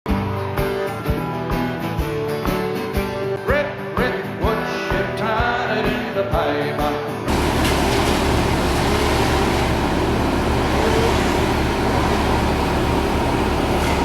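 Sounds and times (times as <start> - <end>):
country song with acoustic guitar: 0.1 - 10.0.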